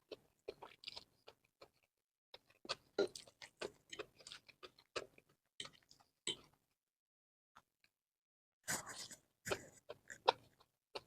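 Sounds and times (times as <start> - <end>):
person chewing noodles: 0.0 - 6.8, 8.7 - 11.0.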